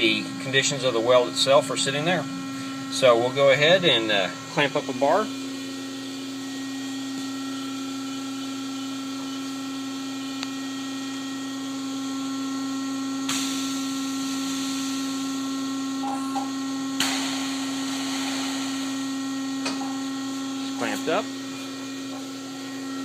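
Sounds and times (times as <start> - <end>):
welding machine hum: 0.0 - 23.0
hydraulic hiss: 17.0 - 19.2.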